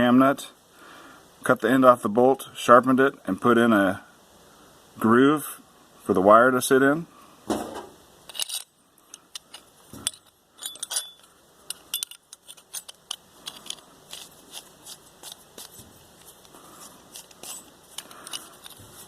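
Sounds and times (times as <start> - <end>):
metal parts clinking together: 8.3 - 16.5, 17.1 - 19.0.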